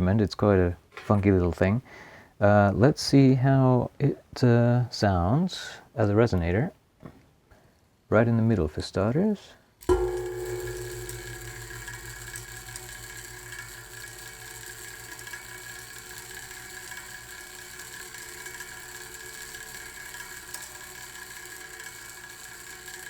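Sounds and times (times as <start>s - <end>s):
clockwork mechanism ticking and whirring: 9.8s - 23.0s
metal spool ringing resonance: 9.8s - 23.0s.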